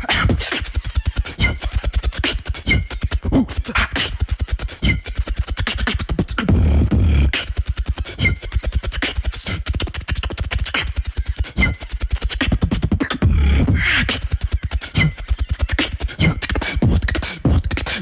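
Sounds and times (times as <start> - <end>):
deep vocal bass: 0.0 - 0.5, 2.7 - 4.1, 6.4 - 7.4, 13.1 - 14.3
beatboxing: 0.0 - 18.0.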